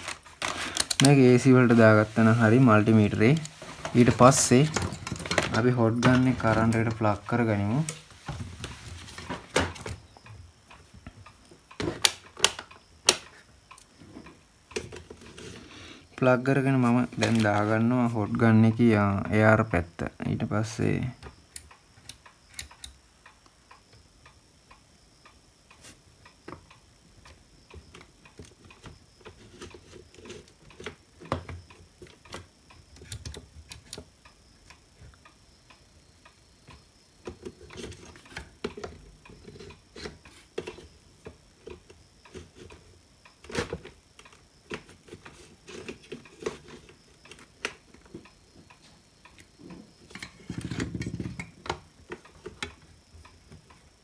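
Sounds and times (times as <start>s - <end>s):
tools clicking on workbench: 0.0s - 1.2s.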